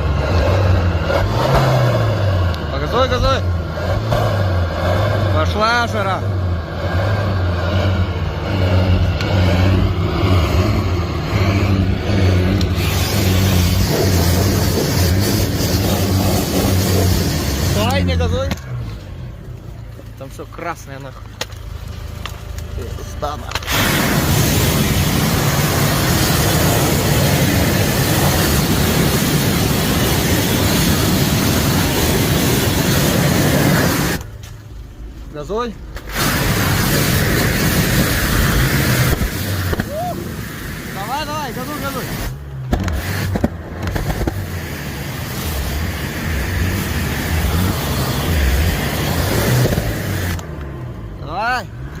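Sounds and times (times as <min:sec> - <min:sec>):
diesel engine revving high: 0:00.0 - 0:19.4, 0:22.2 - 0:34.3, 0:35.9 - 0:52.0
loud exhaust rush: 0:00.0 - 0:52.0
loud hiss: 0:11.3 - 0:18.3, 0:23.5 - 0:34.2, 0:36.0 - 0:50.4.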